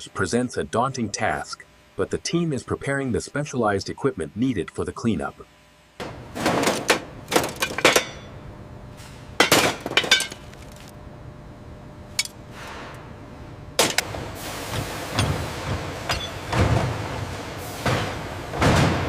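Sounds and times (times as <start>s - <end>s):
heavy metal clanks: 15.1s - 16.8s.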